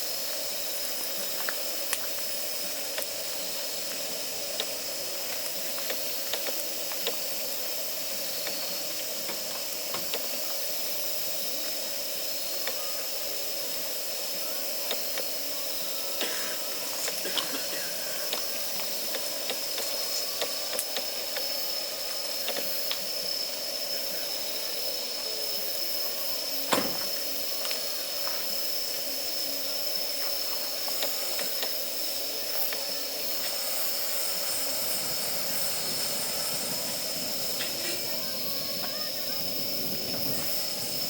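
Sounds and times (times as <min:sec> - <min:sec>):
campfire hissing and crackling: 0:00.0 - 0:41.0
sharp pop of burning wood: 0:26.7 - 0:27.2.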